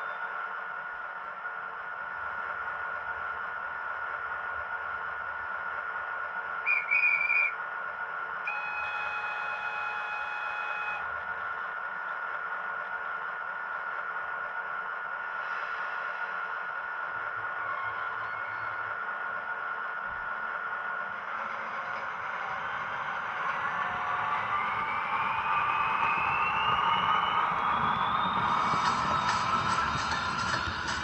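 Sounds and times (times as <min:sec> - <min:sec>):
model train running hum: 0:00.0 - 0:31.0
short trilling whistle: 0:06.6 - 0:07.6, 0:08.5 - 0:11.0
train horn blast: 0:08.5 - 0:11.1.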